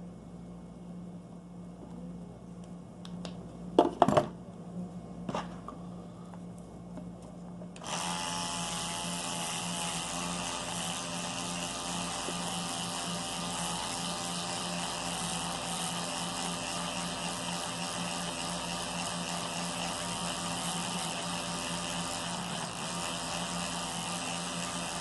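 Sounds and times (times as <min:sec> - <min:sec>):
electric toothbrush buzzing: 0:07.8 - 0:25.0.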